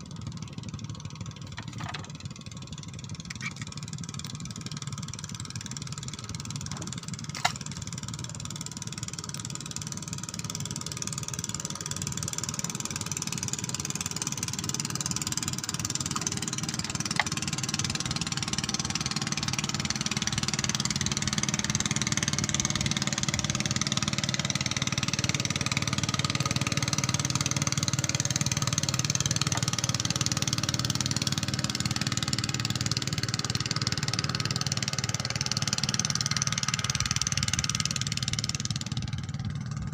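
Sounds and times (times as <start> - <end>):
engine running: 0.0 - 39.9.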